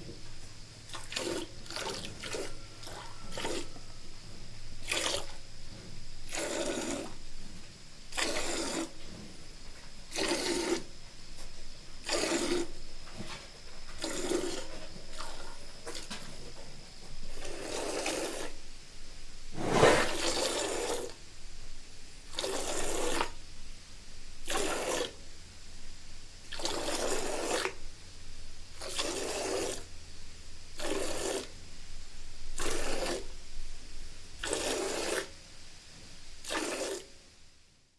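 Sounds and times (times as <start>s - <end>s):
milk spurting into a pail: 0.9s - 3.7s, 4.8s - 5.4s, 8.1s - 8.9s, 10.1s - 10.9s, 12.0s - 12.7s, 14.0s - 16.2s, 17.4s - 18.6s, 19.6s - 21.2s, 22.3s - 23.4s, 24.5s - 25.2s, 26.5s - 27.8s, 28.8s - 29.9s, 30.8s - 31.5s, 32.6s - 33.3s, 34.4s - 35.3s, 36.4s - 37.1s.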